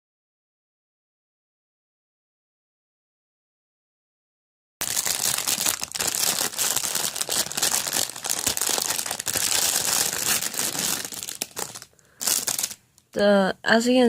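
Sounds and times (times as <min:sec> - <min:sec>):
packaging crinkling: 0:04.8 - 0:13.1.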